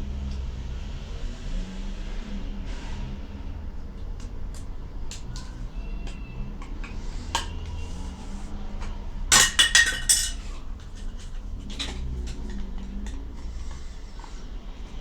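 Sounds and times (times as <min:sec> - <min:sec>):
hard objects clinking: 0:08.8 - 0:13.3.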